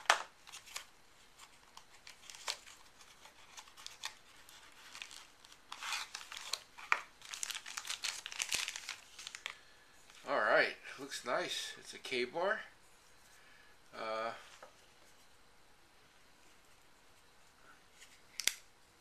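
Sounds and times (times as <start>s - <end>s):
packaging crinkling and tearing: 0.0s - 10.3s.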